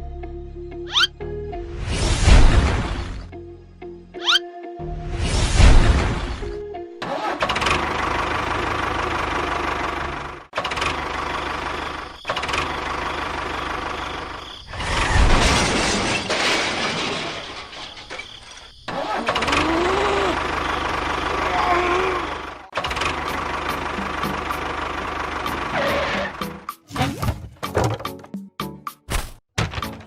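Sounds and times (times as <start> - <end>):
small engine running: 7.1 - 14.3, 19.3 - 26.4.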